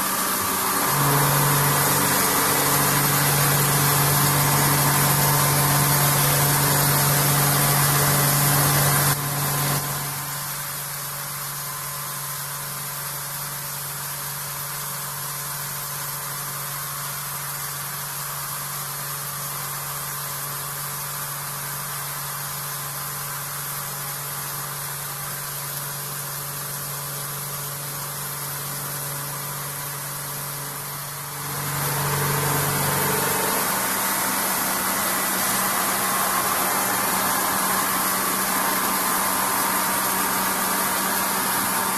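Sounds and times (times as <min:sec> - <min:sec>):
milling machine humming: 0:00.0 - 0:10.5, 0:28.5 - 0:41.9.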